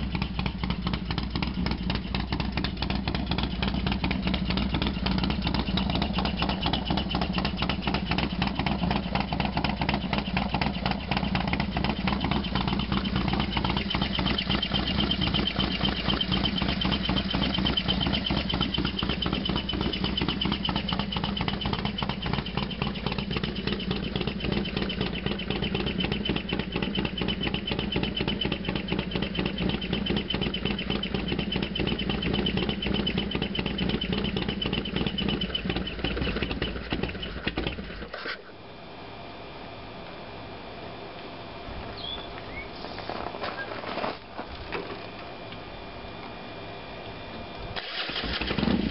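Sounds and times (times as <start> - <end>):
motorcycle engine idling: 0.0 - 38.2, 39.8 - 48.9
high-pitched whine: 0.0 - 48.9.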